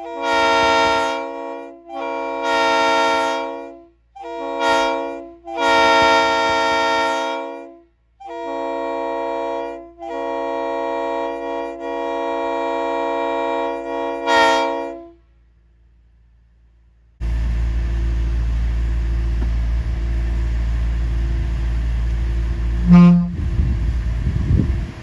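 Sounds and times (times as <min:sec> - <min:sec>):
deep horn blast: 0:00.0 - 0:15.2, 0:22.5 - 0:24.9
railroad air horn chord: 0:00.0 - 0:15.4, 0:22.8 - 0:23.9
steady low rumble: 0:17.2 - 0:25.0.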